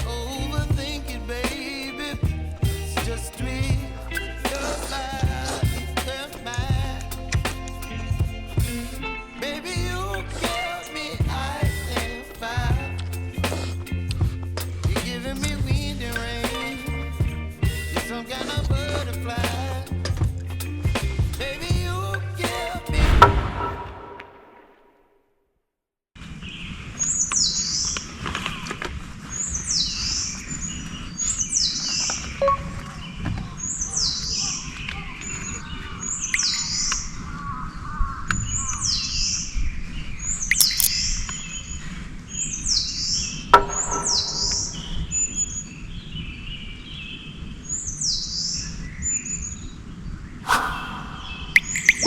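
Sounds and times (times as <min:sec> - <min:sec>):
steady low rumble: 0:02.2 - 0:09.1, 0:18.6 - 0:24.6
birds chirping softly: 0:26.4 - 0:52.0
sharp clicks: 0:40.5 - 0:41.0
bird high falling call: 0:50.4 - 0:52.0.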